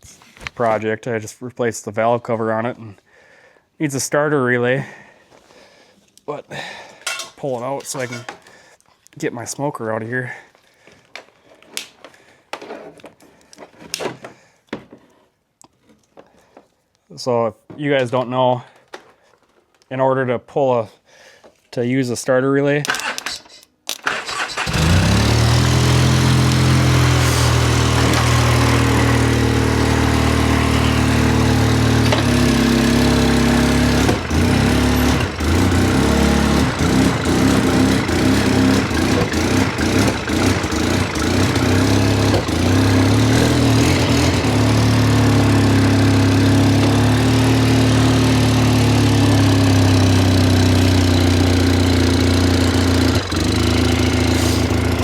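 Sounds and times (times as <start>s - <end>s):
engine starting and idling: 22.9s - 55.0s.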